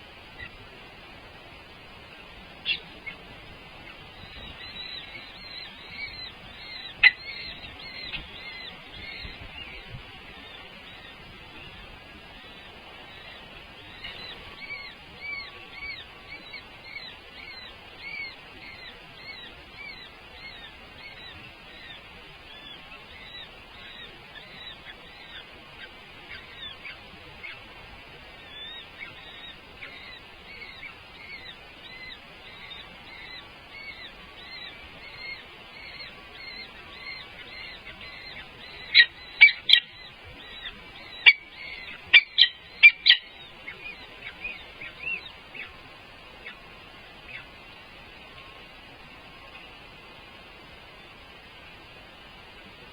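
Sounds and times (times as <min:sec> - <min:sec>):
birds chirping: 0:00.0 - 0:52.9
loud sharp bird calls: 0:02.6 - 0:47.5.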